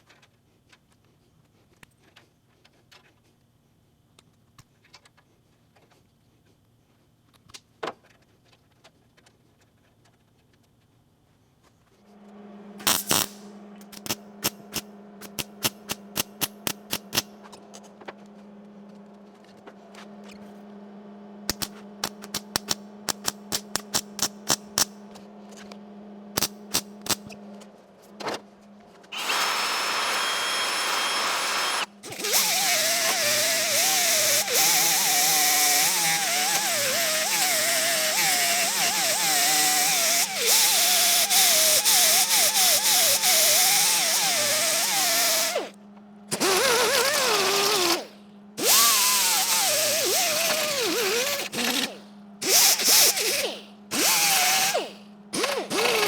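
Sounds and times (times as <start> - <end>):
low hum: 12.1 - 35.4
angle grinder running: 29.1 - 56.0.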